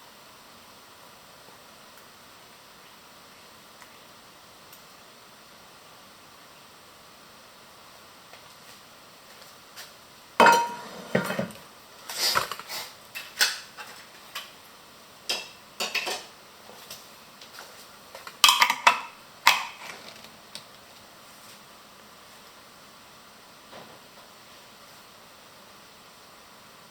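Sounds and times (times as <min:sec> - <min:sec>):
kitchenware clinking and clattering: 0:10.4 - 0:14.5, 0:15.3 - 0:16.3, 0:18.2 - 0:20.2.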